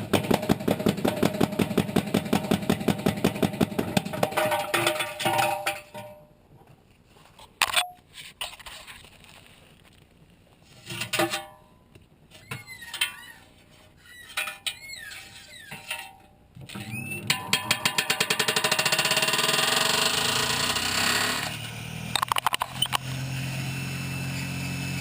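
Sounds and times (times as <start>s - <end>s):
clicks clinks and squeaks: 11.8s - 17.4s, 22.2s - 23.0s.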